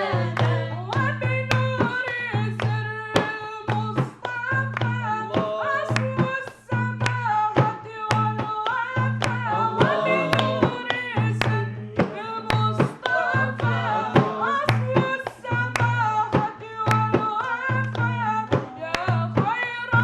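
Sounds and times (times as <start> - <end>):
man singing devotional song: 0.0 - 20.0
sharp percussion hits: 9.4 - 11.2.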